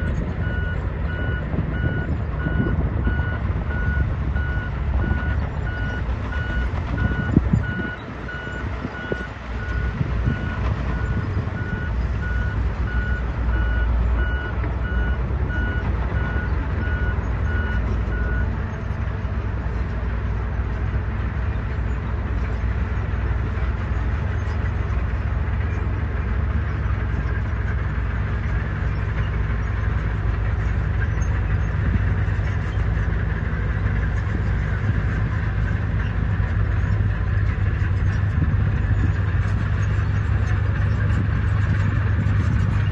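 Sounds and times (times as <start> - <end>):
reversing alarm beeping: 0.0 - 18.5
heavy diesel engine working: 0.0 - 42.9.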